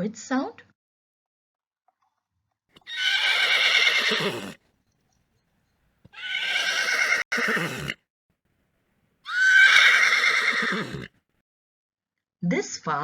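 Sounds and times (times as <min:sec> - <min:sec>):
horse neighing: 0:02.8 - 0:04.6, 0:06.1 - 0:08.0, 0:09.3 - 0:11.1.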